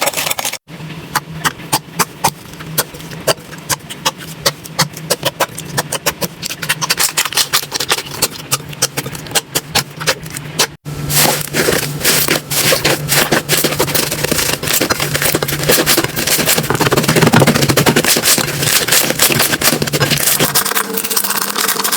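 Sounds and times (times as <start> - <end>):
slime squishing with sticky pops: 1.2 - 21.8.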